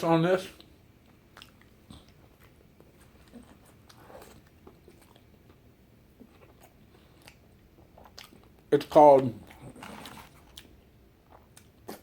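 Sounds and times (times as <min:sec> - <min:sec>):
faint chewing: 0:00.4 - 0:12.0
mouth clicks and smacks: 0:00.6 - 0:05.6, 0:06.2 - 0:08.7, 0:10.5 - 0:12.0.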